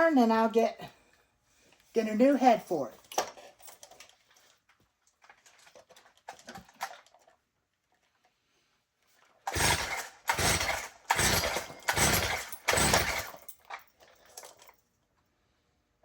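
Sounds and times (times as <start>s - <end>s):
string trimmer recoil starter pulls: 9.5s - 13.8s.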